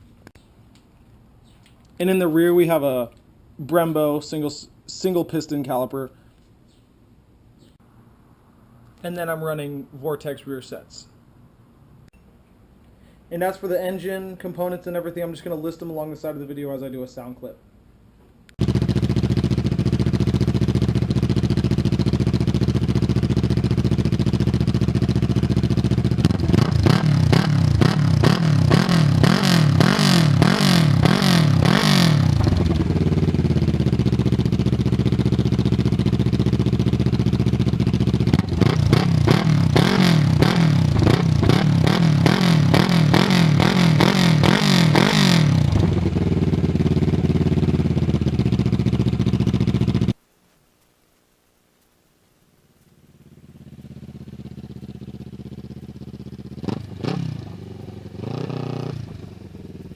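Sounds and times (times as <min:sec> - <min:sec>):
motorcycle engine idling and revving: 0:18.6 - 0:50.2, 0:53.0 - 0:59.9.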